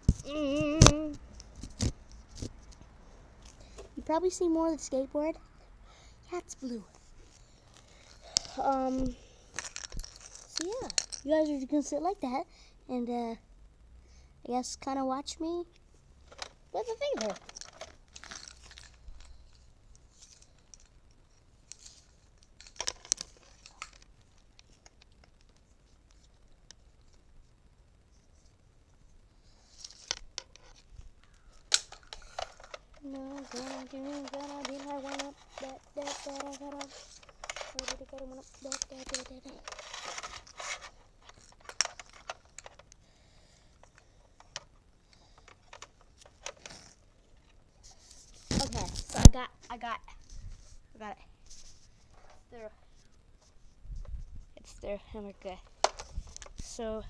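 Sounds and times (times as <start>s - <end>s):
rustling and clicks of handling: 0.0s - 4.6s, 6.3s - 12.2s, 15.7s - 43.1s, 43.7s - 57.0s
rustle and scrape: 6.6s - 11.9s, 16.2s - 27.5s, 28.1s - 42.9s, 45.4s - 57.0s.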